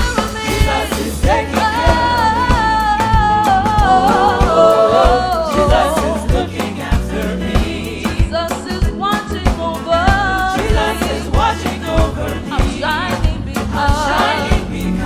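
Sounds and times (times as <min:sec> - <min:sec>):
band with drums and bass: 0:00.0 - 0:15.0
sung vocals: 0:00.0 - 0:15.0.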